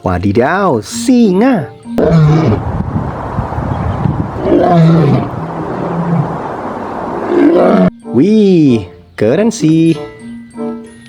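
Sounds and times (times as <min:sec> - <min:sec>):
lion roaring and growling: 0:02.0 - 0:02.8, 0:04.1 - 0:08.0.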